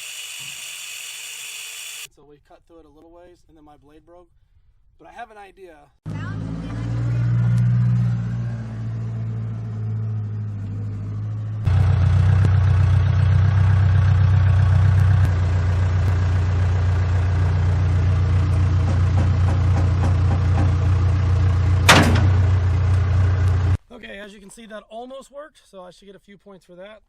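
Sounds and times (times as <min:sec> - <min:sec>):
engine running: 0:06.1 - 0:23.8.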